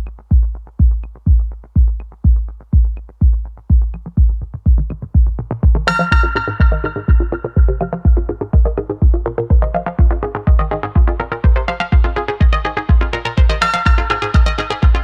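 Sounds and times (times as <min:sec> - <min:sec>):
kick drum beat: 0:00.0 - 0:15.0
light hi-hats: 0:00.0 - 0:15.0
bright synth chord: 0:05.9 - 0:08.5.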